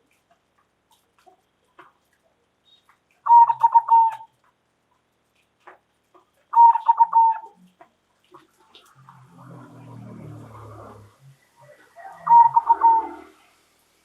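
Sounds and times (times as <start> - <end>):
dove cooing: 3.3 - 4.3, 6.5 - 7.6, 11.6 - 13.6.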